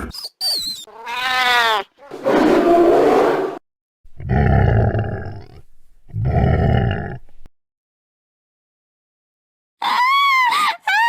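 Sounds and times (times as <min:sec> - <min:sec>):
animal-like roars and growls: 0:02.1 - 0:03.6, 0:04.2 - 0:07.3.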